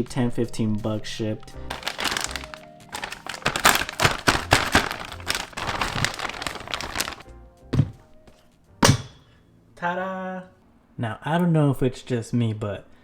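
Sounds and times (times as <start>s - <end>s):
background music: 0.0s - 9.3s
packaging crinkling and tearing: 1.7s - 7.2s.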